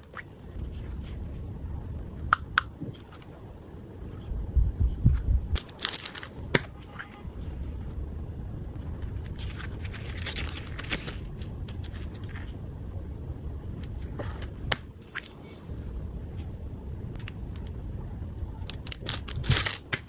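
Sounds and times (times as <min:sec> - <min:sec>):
packaging crinkling and tearing: 0:05.6 - 0:06.8, 0:09.2 - 0:12.5, 0:18.7 - 0:20.0.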